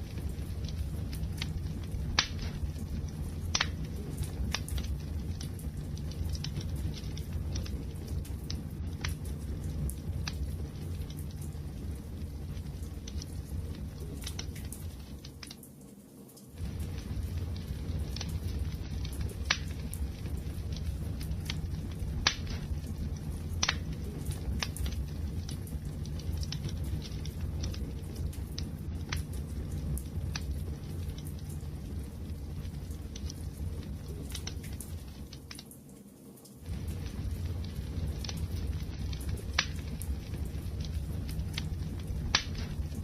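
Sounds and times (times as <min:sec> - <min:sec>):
low rumble of flames: 0:00.0 - 0:43.0
wood fire crackling: 0:00.0 - 0:43.0.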